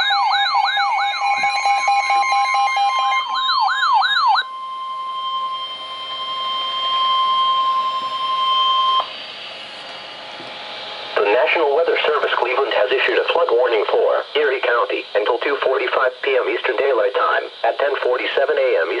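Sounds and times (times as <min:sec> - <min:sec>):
long warning beep: 0:00.0 - 0:11.4
electronic siren wailing: 0:00.0 - 0:14.6
radio hiss: 0:10.8 - 0:19.0.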